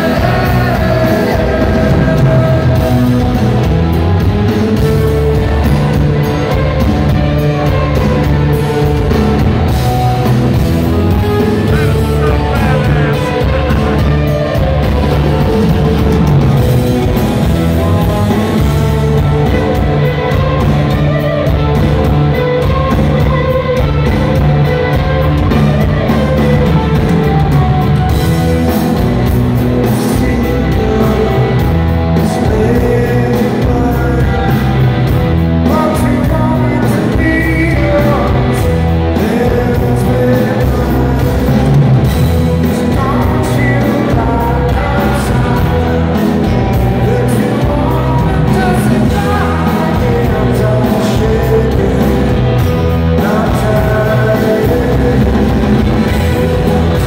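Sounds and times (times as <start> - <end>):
man singing: 0.0 - 3.8, 11.1 - 15.9, 17.1 - 20.3, 29.7 - 35.0, 35.6 - 57.0
bass guitar: 0.0 - 57.0
drum kit: 0.0 - 57.0
electric guitars: 0.0 - 57.0.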